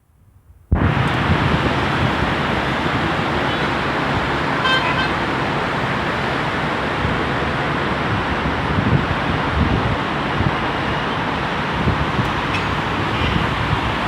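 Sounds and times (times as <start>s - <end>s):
road traffic noise: 0.7s - 14.0s
short car horn toot: 4.6s - 5.2s, 12.3s - 13.8s.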